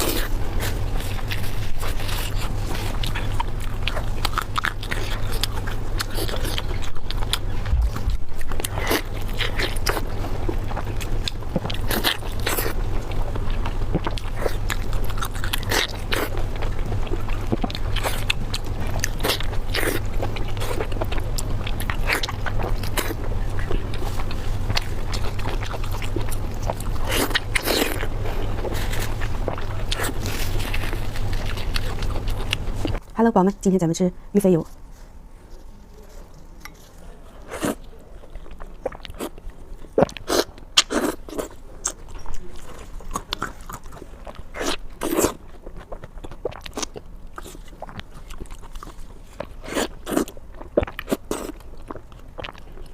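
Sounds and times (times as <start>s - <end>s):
biting and chewing: 0.0s - 33.2s, 34.8s - 52.9s
food crunching: 0.0s - 33.2s, 34.7s - 52.9s
low hum: 0.0s - 36.8s.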